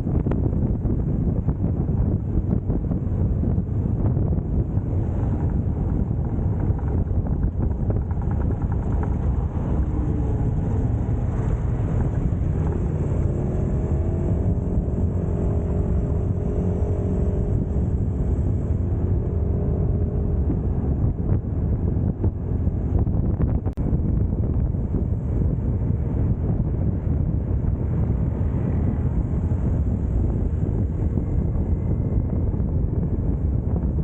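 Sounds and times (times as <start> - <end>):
motorcycle engine rumbling: 0.0 - 34.0
wind buffeting microphone: 0.0 - 34.0
higher engine note: 4.1 - 26.4.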